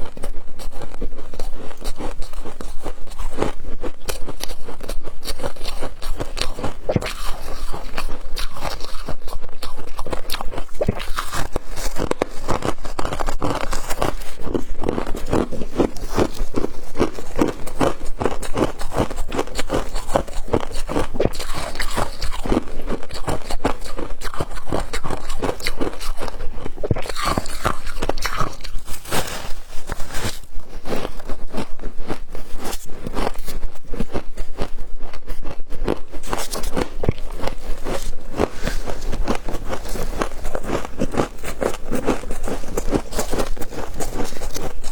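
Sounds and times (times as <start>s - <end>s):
frost crunching when chewed: 0.0s - 44.9s.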